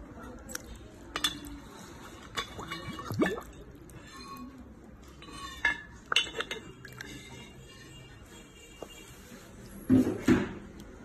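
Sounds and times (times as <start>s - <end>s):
clay teapot clinking: 0.9s - 8.0s.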